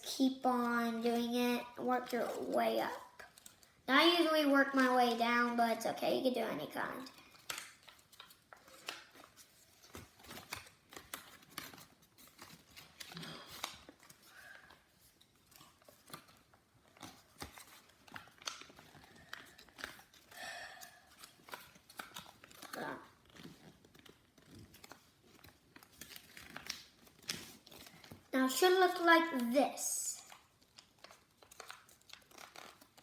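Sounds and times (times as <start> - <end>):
paper crinkling and rustling: 2.0 - 3.8, 7.0 - 29.5, 30.2 - 33.0
paper folds clicking: 7.1 - 29.5, 30.2 - 33.0.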